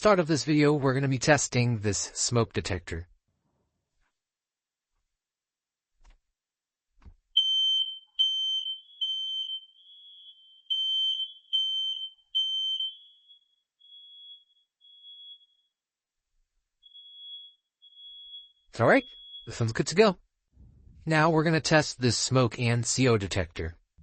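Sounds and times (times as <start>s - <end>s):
smoke detector beeping: 7.4s - 15.7s, 16.8s - 19.8s.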